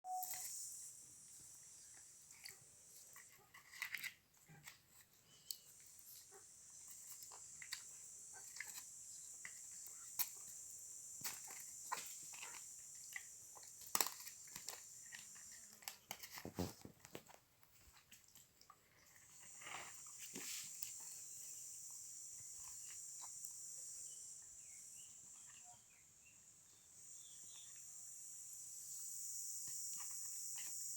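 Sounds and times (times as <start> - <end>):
running water hiss: 0.1 - 3.3, 5.7 - 16.9, 19.2 - 25.4, 27.0 - 30.9.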